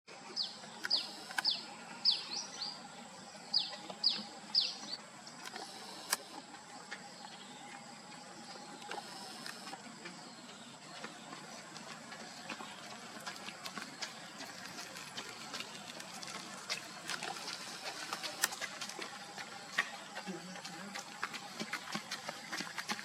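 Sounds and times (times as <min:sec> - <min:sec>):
small bird chirping: 0:00.4 - 0:02.8, 0:03.4 - 0:05.0
faint scattered clicks: 0:00.8 - 0:01.6, 0:03.6 - 0:23.0.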